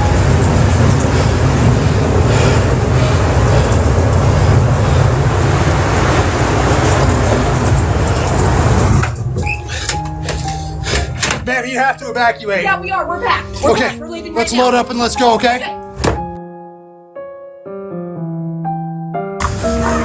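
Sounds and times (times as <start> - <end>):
strong wind buffeting microphone: 0.0 - 11.5.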